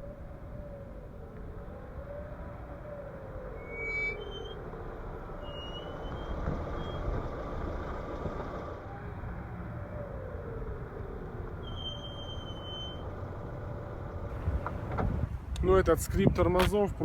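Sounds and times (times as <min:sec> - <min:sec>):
car road noise: 0:00.0 - 0:17.0
brakes squealing: 0:03.6 - 0:08.8, 0:11.6 - 0:15.6.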